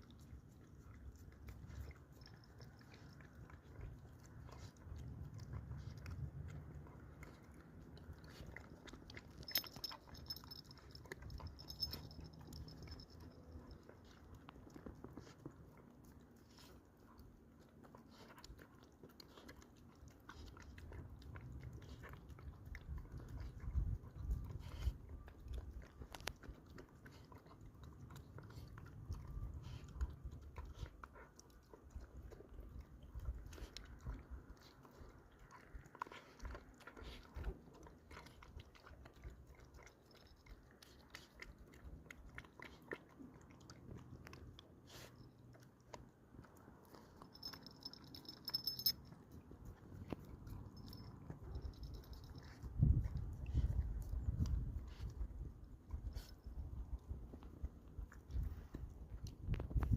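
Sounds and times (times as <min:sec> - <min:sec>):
puppy chewing and crunching: 0:00.0 - 0:59.9.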